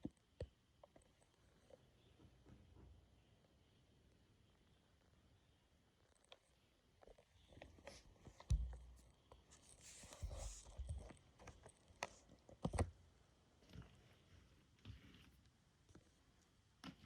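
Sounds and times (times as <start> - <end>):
soft rustling: 7.1 - 12.6.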